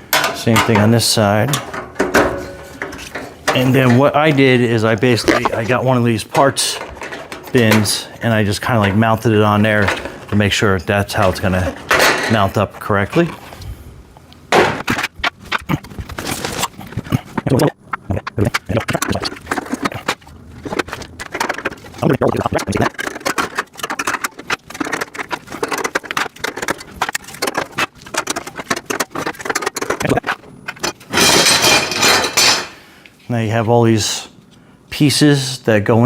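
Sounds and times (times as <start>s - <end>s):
metal rack and plastic bins clattering: 0.0s - 13.5s, 18.9s - 32.8s.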